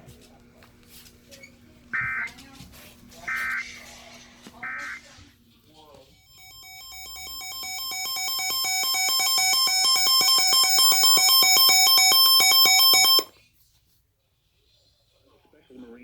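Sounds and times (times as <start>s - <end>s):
warbling electronic alert beep: 6.2s - 13.3s.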